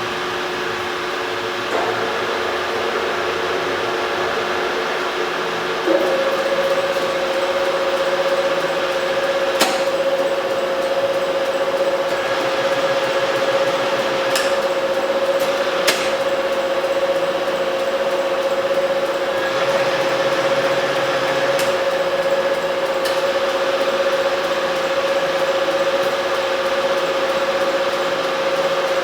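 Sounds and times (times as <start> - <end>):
milling machine whining: 0.0 - 26.6.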